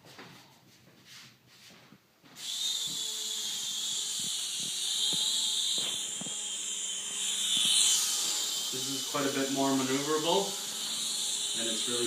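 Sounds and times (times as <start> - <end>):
toy helicopter motor whine: 2.4 - 12.0.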